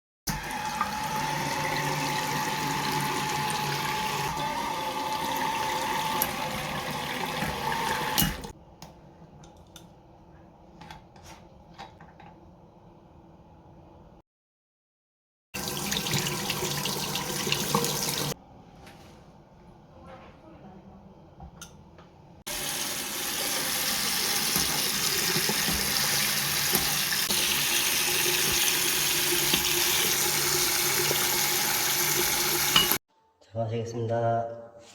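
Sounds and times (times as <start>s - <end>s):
faucet running: 0.3s - 8.5s, 15.6s - 18.4s, 22.5s - 33.0s.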